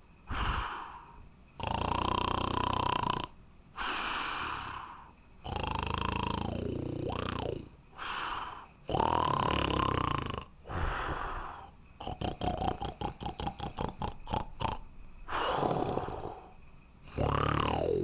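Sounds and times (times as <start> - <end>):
breath: 0.3 - 1.3, 3.8 - 5.2, 7.9 - 8.8, 10.6 - 11.8, 15.3 - 16.3
man snoring: 1.6 - 3.3, 3.9 - 18.0.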